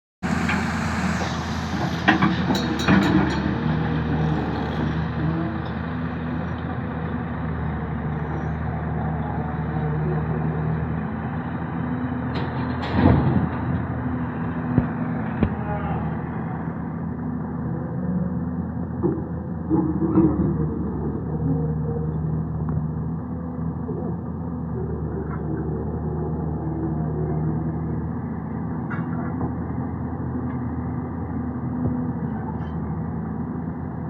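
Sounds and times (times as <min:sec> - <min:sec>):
excavator diesel engine running: 0:00.2 - 0:34.0
machine knocks and clanks: 0:01.9 - 0:03.8, 0:12.3 - 0:13.9.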